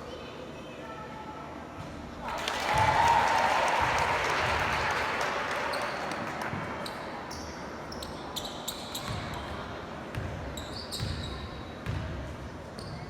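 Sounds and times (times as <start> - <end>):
gym crowd noise: 0.0 - 13.0
sneakers squeaking: 5.7 - 13.0.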